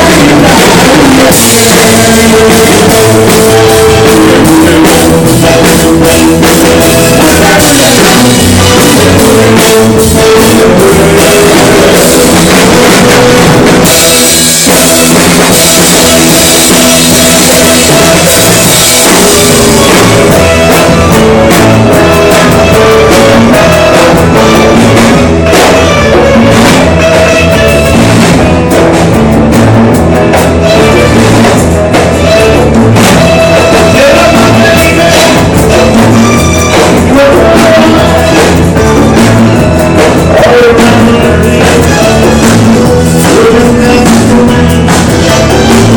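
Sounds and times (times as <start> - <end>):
drum kit beat: 0.0 - 45.9
rock music: 0.0 - 45.9.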